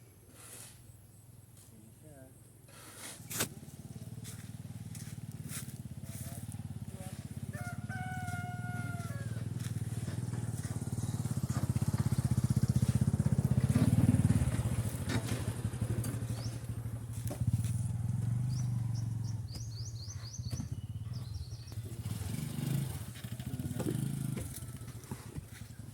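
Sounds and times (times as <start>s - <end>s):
engine running with low pulse: 3.5s - 25.9s
high bird chirps: 18.5s - 22.0s.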